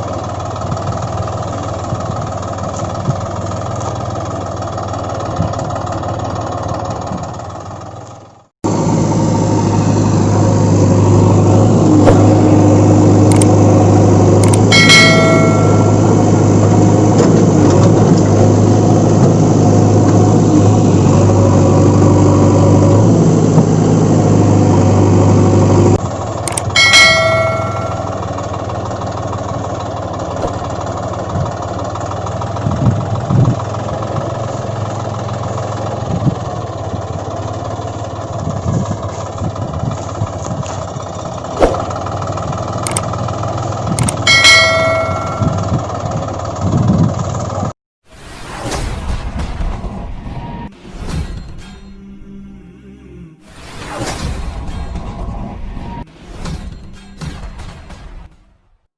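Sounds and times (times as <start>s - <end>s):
vehicle engine running: 0.0s - 47.7s
bell-like ding: 14.4s - 16.3s, 26.5s - 28.4s, 44.3s - 45.8s.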